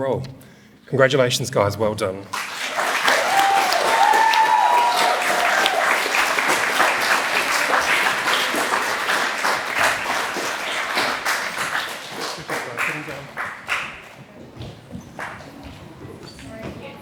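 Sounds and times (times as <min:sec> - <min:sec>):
audience applauding: 0:02.3 - 0:14.4.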